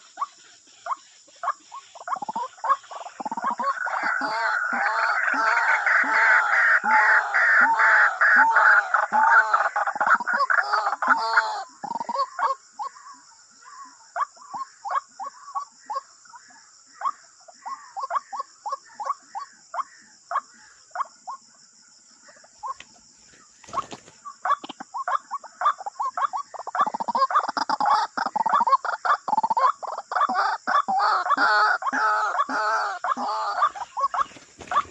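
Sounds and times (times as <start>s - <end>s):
waterhen calling harsh notes: 3.3s - 12.3s, 30.2s - 34.9s.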